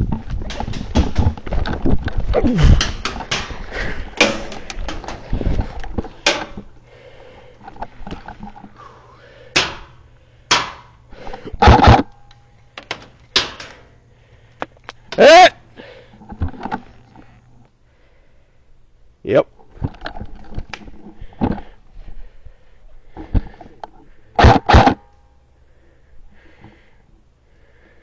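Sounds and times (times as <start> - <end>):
clicks and knocks: 0.0 - 6.7
airsoft rifle shots: 24.4 - 25.0.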